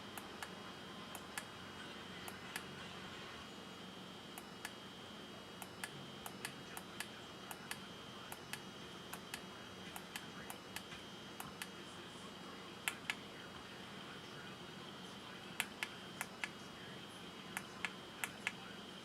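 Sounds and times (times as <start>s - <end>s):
small clicks and taps: 12.9s - 13.2s.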